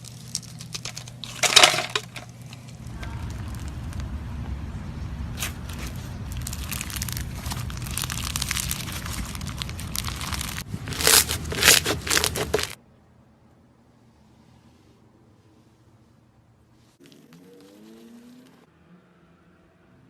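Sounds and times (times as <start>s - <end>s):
slime crackling and popping: 0.0s - 1.6s, 5.4s - 12.8s.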